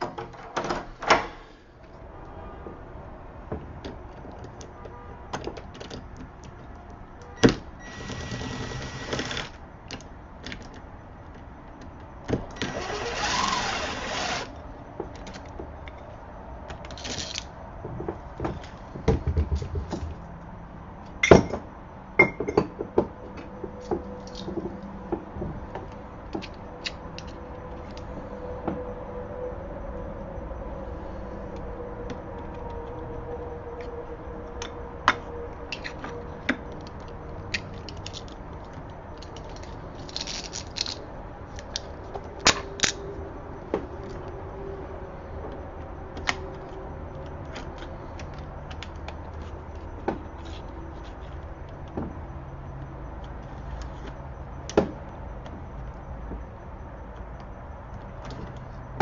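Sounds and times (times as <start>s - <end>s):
power screwdriver whirring: 7.8s - 9.6s, 12.6s - 14.5s.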